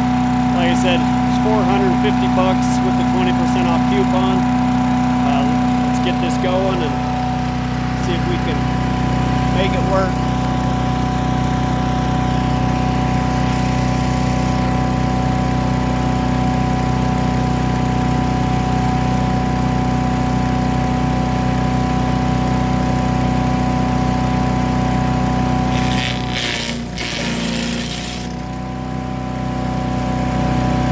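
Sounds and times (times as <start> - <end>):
chipper shredder engine running: 0.0 - 30.9
harsh noisy rasp: 25.6 - 28.6.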